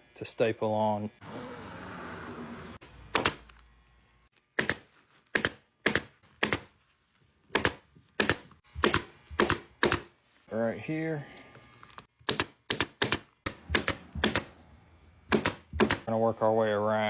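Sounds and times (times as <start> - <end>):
staple gun firing: 3.1 - 3.5, 4.6 - 6.7, 7.5 - 10.1, 12.2 - 14.5, 15.3 - 16.1.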